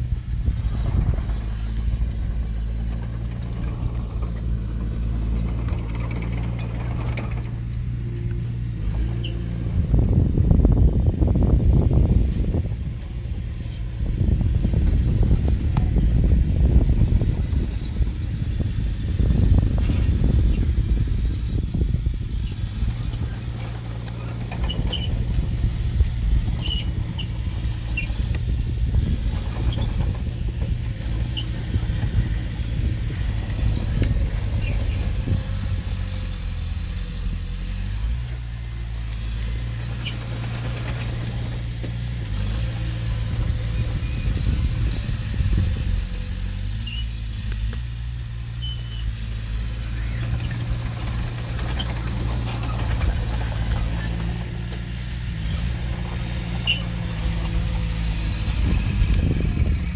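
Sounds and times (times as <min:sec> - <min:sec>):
diesel engine working: 0:00.0 - 0:59.9
high squeaks and clinks: 0:56.5 - 0:58.9.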